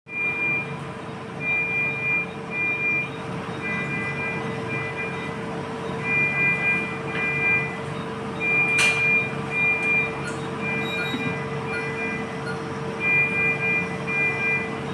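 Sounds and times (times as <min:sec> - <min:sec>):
high electronic tones: 0:08.4 - 0:14.9.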